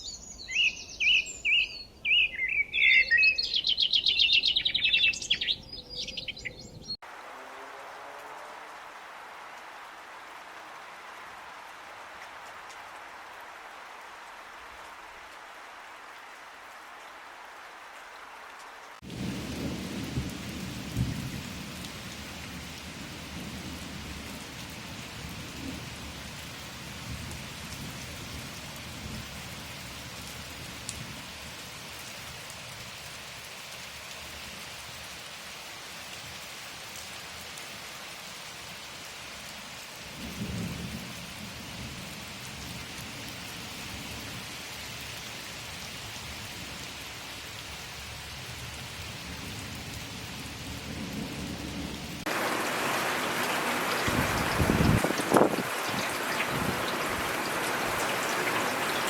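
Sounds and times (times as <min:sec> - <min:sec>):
rainfall hiss: 0:07.0 - 0:59.0
thunder rumbles: 0:19.0 - 0:24.5, 0:50.6 - 0:59.0.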